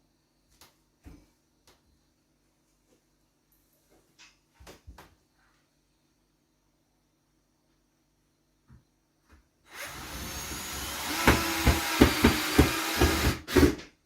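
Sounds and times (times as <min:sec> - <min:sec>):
power drill motor: 0:09.7 - 0:13.8.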